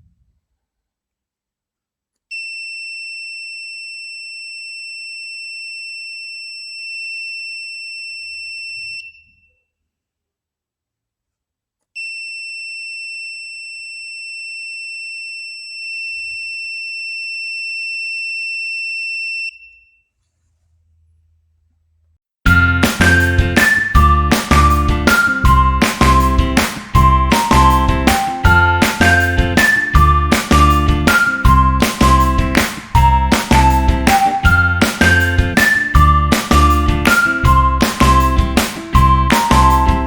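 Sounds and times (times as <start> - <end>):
gas alarm buzzer tone: 2.3 - 9.5, 12.0 - 20.0.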